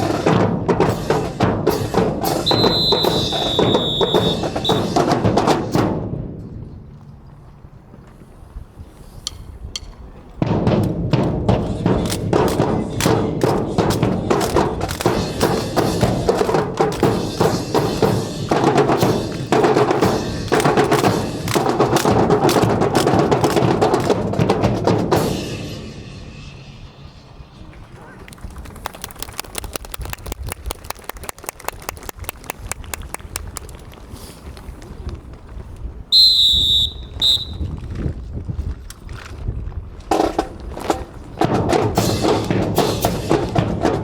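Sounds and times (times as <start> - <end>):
snare and bass drum cadence: 0.0 - 6.0, 9.8 - 25.9, 36.2 - 37.6, 40.1 - 44.0.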